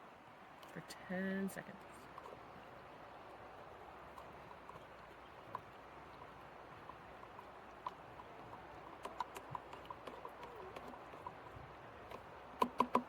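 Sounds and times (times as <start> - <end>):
paddle tapping plastic chamber: 8.9 - 11.4, 12.0 - 13.0.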